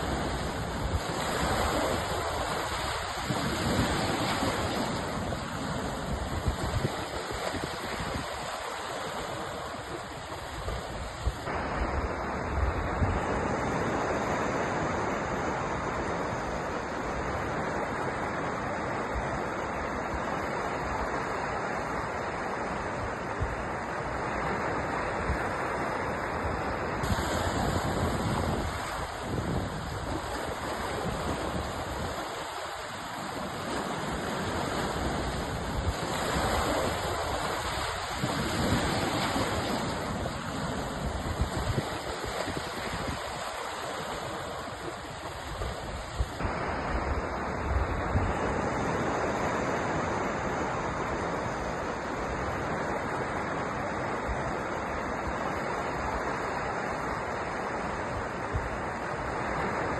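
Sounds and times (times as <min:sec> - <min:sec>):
waves washing onto shore: 0:00.0 - 0:59.9.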